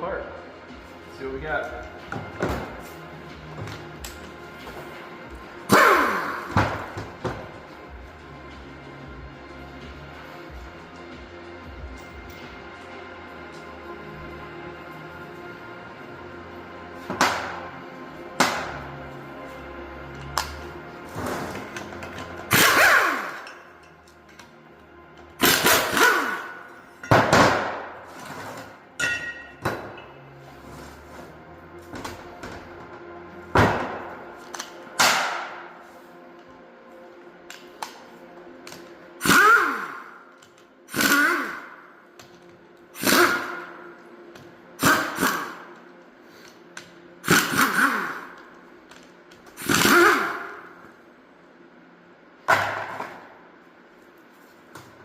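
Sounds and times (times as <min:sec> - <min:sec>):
hammer striking metal: 0:18.4 - 0:18.9, 0:25.4 - 0:28.2, 0:29.0 - 0:30.2, 0:35.0 - 0:35.7
impact wrench bursts with falling whine: 0:22.5 - 0:23.6, 0:25.4 - 0:26.8, 0:39.2 - 0:40.1, 0:40.9 - 0:41.8, 0:43.0 - 0:43.8, 0:44.8 - 0:45.6, 0:47.2 - 0:48.4, 0:49.6 - 0:50.8.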